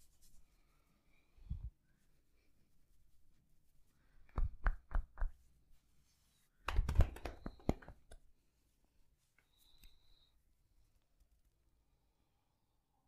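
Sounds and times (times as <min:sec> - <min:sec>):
massage tapping: 0:04.3 - 0:05.4.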